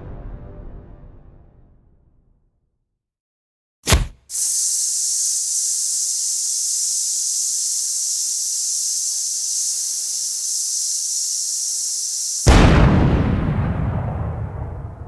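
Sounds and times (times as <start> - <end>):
fuse fizzing: 4.3 - 12.5.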